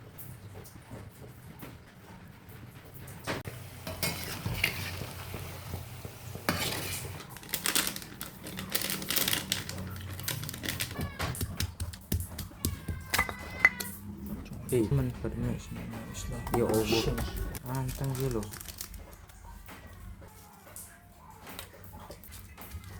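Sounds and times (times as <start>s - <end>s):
kitchen utensils clinking and scraping: 3.3s - 11.4s, 12.4s - 20.8s.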